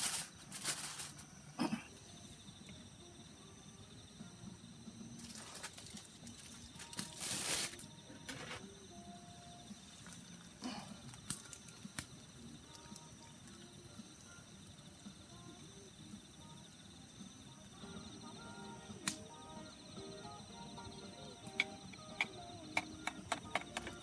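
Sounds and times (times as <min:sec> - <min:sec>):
rustle: 0:00.0 - 0:01.3, 0:05.2 - 0:08.6
insects chirring: 0:00.0 - 0:24.0
sharp clicks: 0:19.0 - 0:19.3, 0:21.4 - 0:24.0.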